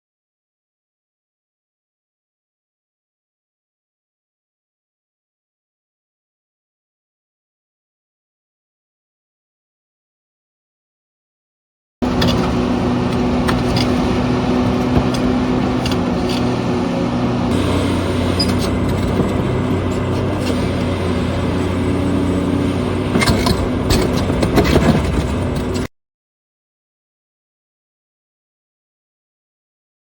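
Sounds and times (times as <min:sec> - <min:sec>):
excavator diesel engine running: 0:12.0 - 0:25.9.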